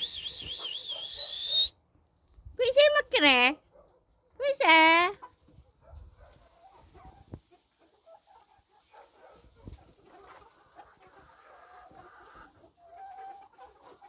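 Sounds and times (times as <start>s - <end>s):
chickens clucking: 0.0s - 1.6s, 5.0s - 14.0s.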